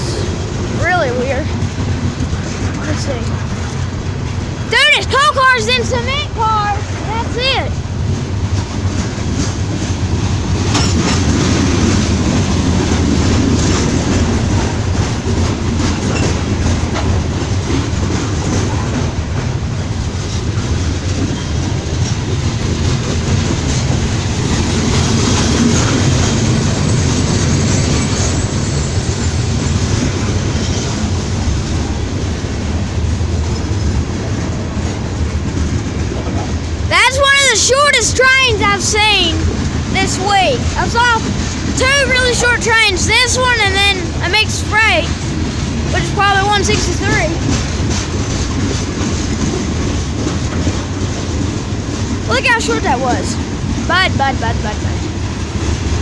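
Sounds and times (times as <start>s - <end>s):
freight train rolling past: 0.0s - 56.0s
wheels clacking over rail joints: 7.0s - 53.9s.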